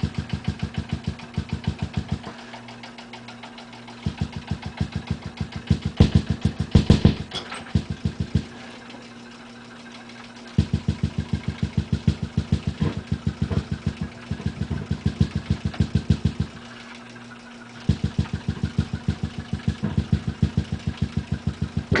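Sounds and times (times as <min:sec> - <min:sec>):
steady low hum: 0:00.0 - 0:22.0
rhythmic low popping: 0:07.8 - 0:08.5, 0:10.5 - 0:16.6, 0:17.8 - 0:22.0.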